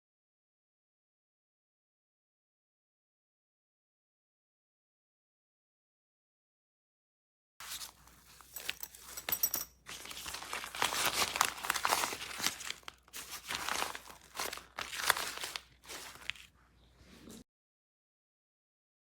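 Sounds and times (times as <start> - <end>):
material crinkling and rustling: 7.6 - 16.5.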